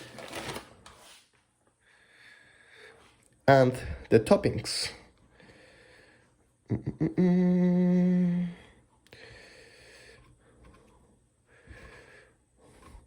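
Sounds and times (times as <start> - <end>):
man humming a steady note: 6.7 - 8.7.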